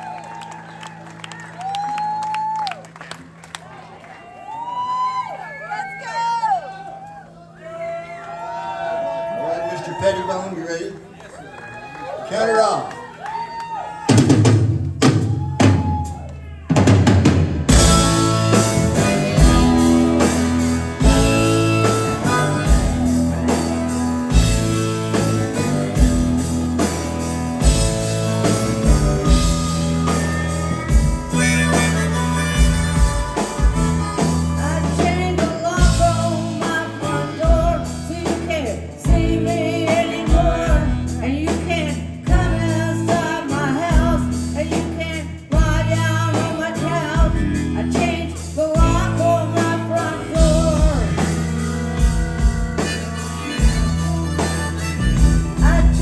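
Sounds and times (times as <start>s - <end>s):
drums: 12.9s - 56.0s
bass guitar: 14.1s - 56.0s
electric guitar: 16.8s - 56.0s
person singing: 17.7s - 25.7s, 29.6s - 56.0s.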